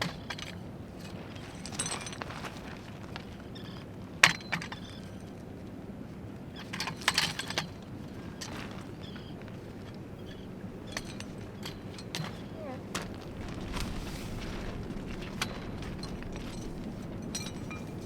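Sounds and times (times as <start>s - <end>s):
hard objects clinking: 10.3s - 18.0s.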